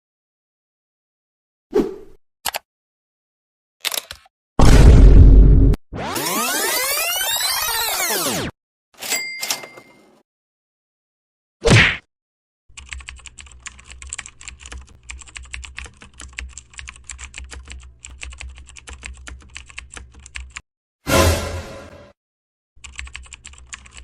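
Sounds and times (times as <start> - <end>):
keyboard typing: 12.7 - 20.6, 22.8 - 24.0.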